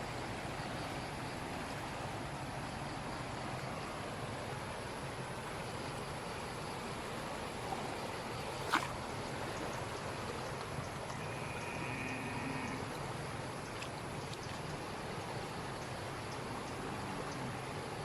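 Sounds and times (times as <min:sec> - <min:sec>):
floodwater rushing: 0:03.4 - 0:18.0.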